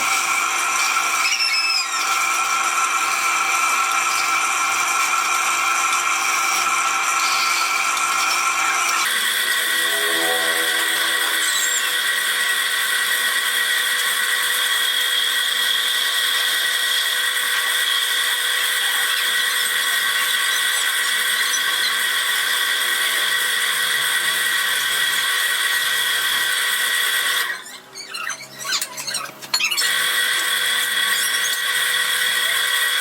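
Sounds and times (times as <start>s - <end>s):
power tool whining: 0.0s - 27.7s.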